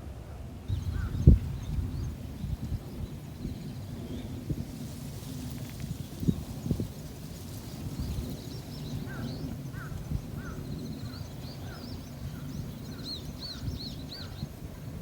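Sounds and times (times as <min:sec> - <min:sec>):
songbirds chirping and trilling: 0:07.5 - 0:14.6.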